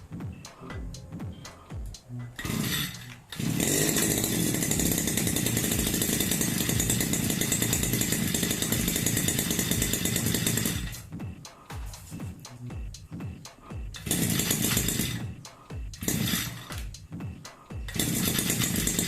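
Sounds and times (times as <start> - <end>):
brush cutter engine running: 2.4 - 11.0, 14.0 - 15.2, 16.0 - 16.8, 17.9 - 19.0.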